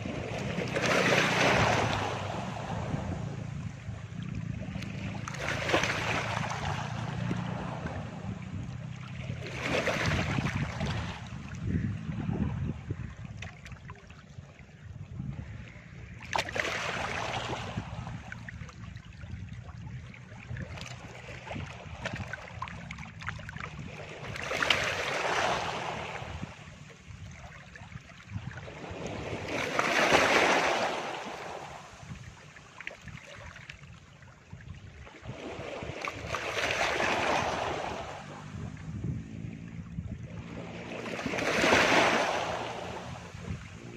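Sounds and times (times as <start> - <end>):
sea waves breaking on beach: 0.0 - 14.8, 15.5 - 43.9
steady low rumble: 1.6 - 16.4, 17.0 - 24.4, 37.4 - 41.4, 42.2 - 43.9.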